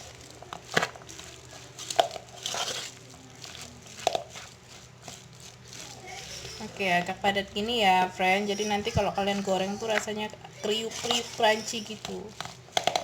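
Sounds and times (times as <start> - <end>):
spoon stirring thick batter: 0.0 - 13.0.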